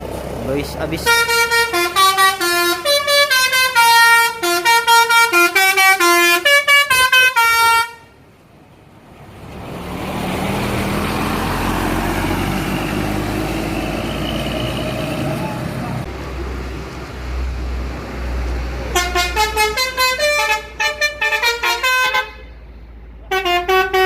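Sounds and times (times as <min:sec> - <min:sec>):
vehicle rumble: 0:00.0 - 0:24.0
bus horn playing fast melody: 0:01.0 - 0:08.2, 0:18.9 - 0:22.6, 0:23.3 - 0:24.0.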